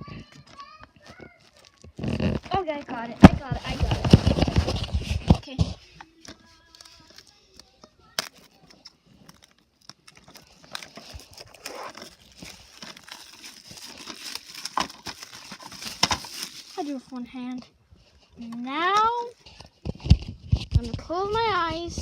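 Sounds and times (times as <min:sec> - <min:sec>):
plastic packaging crinkling: 0:00.2 - 0:17.6.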